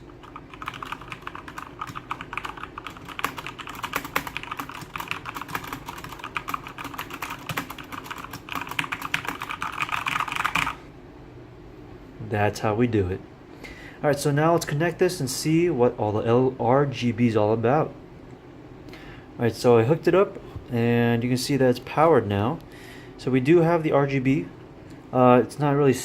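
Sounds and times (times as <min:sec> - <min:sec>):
fast typing on mechanical keyboard: 0:00.0 - 0:10.8.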